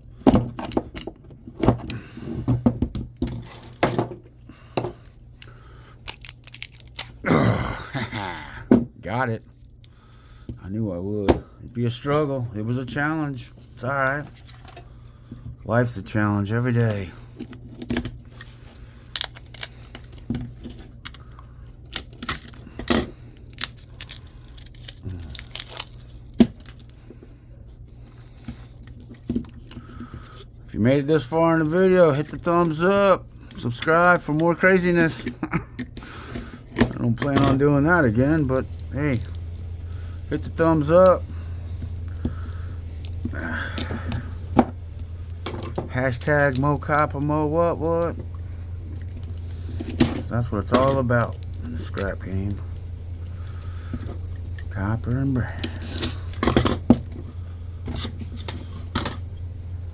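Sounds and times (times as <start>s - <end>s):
steady low hum: 0.0s - 59.9s
scrap metal clinking and rattling: 55.6s - 59.9s
metal tools clinking and knocking: 57.9s - 59.8s.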